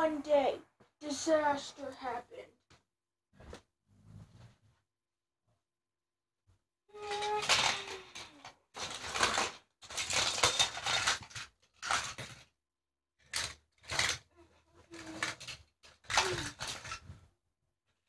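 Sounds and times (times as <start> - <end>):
child making crash noises: 6.9 - 9.5, 14.8 - 15.4, 16.1 - 16.8.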